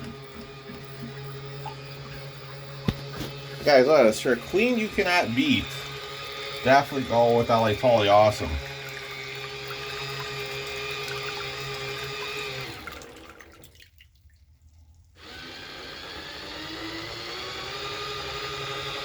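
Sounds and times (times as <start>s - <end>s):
washing machine motor humming: 0.0s - 13.7s, 15.2s - 19.0s
water churning: 0.0s - 14.3s.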